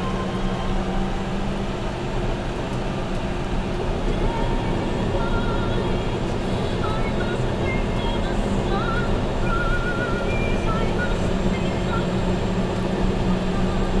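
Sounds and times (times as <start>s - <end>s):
bulldozer engine rumble: 0.0s - 14.0s.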